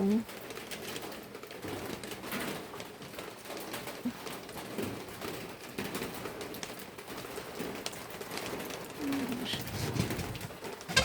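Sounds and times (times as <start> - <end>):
light rain pattering: 0.0 - 11.0
dove cooing: 9.0 - 11.0.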